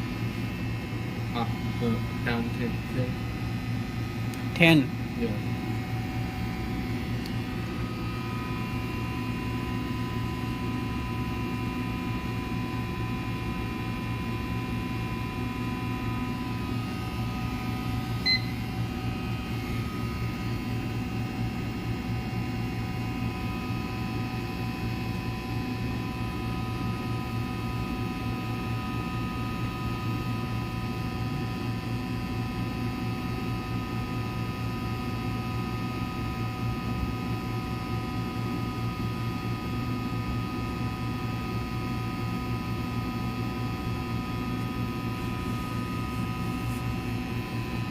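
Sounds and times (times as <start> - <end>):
electrical hum and buzz: 0.0 - 47.9
short beep: 18.2 - 18.6.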